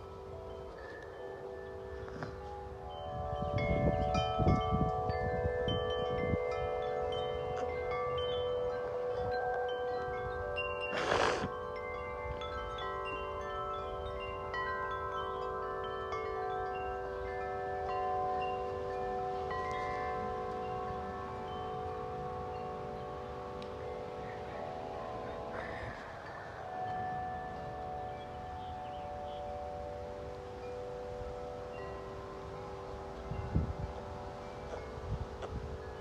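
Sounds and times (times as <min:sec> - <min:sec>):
metal wind chimes ringing: 0:00.0 - 0:36.0
wind rumble on microphone: 0:02.0 - 0:12.8, 0:32.0 - 0:36.0.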